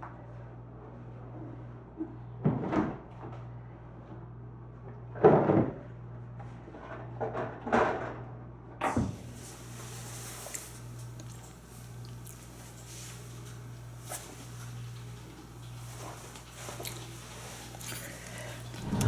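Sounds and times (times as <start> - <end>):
steady low hum: 8.8 - 19.0.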